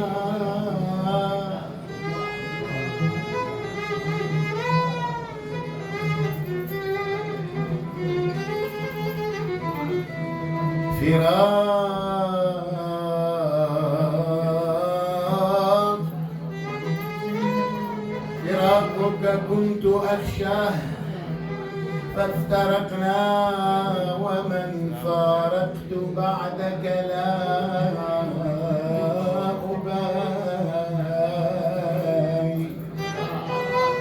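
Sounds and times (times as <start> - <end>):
violin melody: 0.0 - 12.8, 15.0 - 34.0
low musical accompaniment: 0.0 - 34.0.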